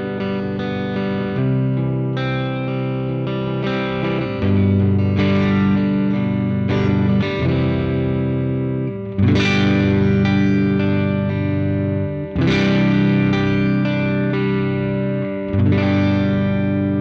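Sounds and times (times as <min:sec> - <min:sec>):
distorted electric guitar chords: 0:00.0 - 0:17.0.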